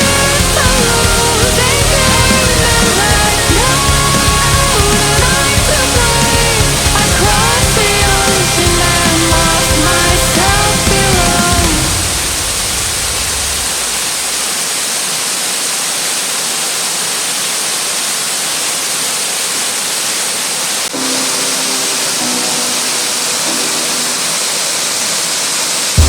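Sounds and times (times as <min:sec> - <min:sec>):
song: 0:00.0 - 0:12.6, 0:20.9 - 0:26.0
waterfall rushing: 0:00.0 - 0:26.0
faint music: 0:20.9 - 0:26.0.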